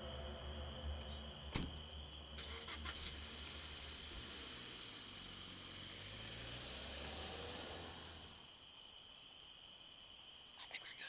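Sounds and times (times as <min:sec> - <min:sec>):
car engine starting: 0:02.3 - 0:08.6.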